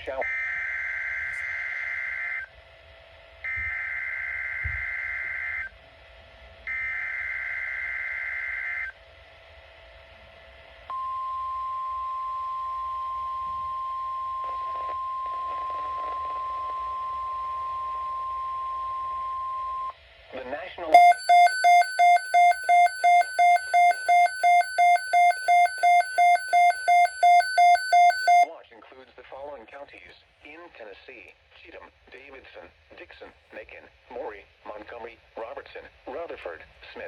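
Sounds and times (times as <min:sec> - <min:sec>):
steady single-pitch alarm tone: 0:16.2 - 0:20.0, 0:21.0 - 0:28.5
harsh digital data tone bursts: 0:21.0 - 0:28.5.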